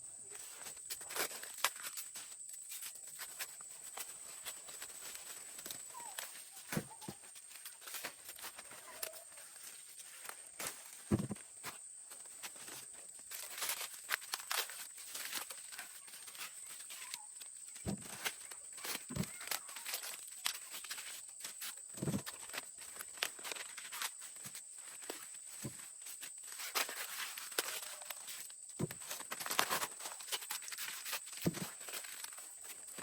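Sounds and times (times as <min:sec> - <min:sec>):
dry leaves rustling and crackling: 0:00.3 - 0:11.3, 0:12.1 - 0:33.0
soft thuds: 0:11.1 - 0:11.4.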